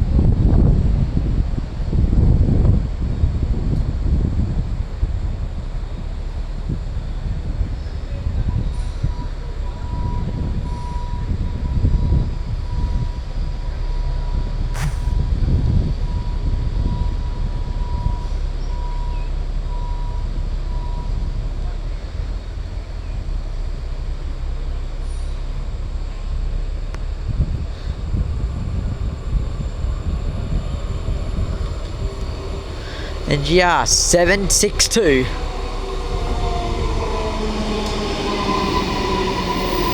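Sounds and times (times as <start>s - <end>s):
electric train rumble: 0.0s - 39.9s
sharp click: 14.8s - 15.1s.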